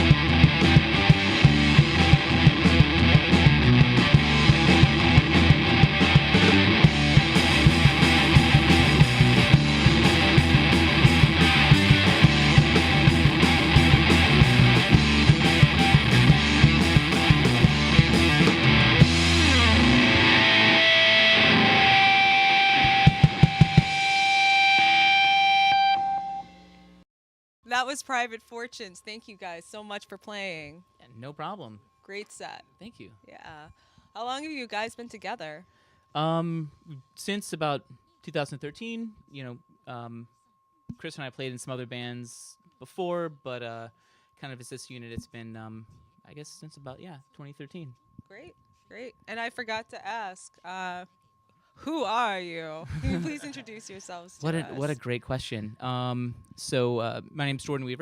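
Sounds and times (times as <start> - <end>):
bass guitar: 0.0 - 26.6, 52.9 - 53.6, 54.4 - 58.0
drums: 0.0 - 26.6, 52.9 - 53.8
rock band playing: 0.0 - 26.6
electric guitar: 0.0 - 26.7, 52.9 - 53.7, 54.4 - 55.2.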